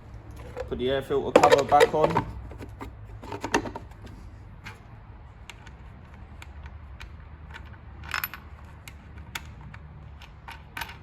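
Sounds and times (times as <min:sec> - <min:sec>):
plastic and metal cover clattering: 0:00.4 - 0:04.1.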